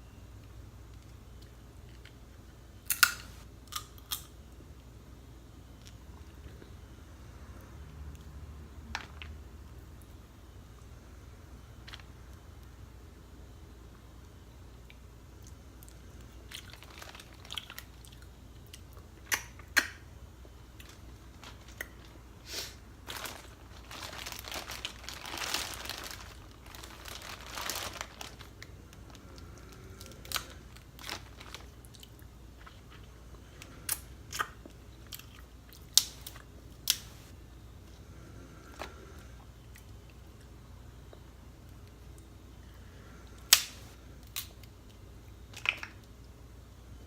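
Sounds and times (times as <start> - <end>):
crab shells cracking: 2.9 - 4.3.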